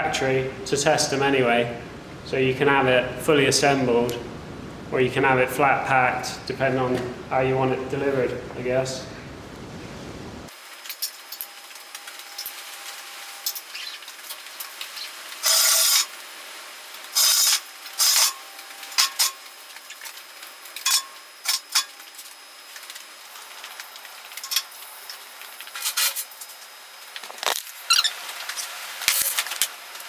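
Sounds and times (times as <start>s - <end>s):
metal parts and tools clinking: 10.5s - 30.0s.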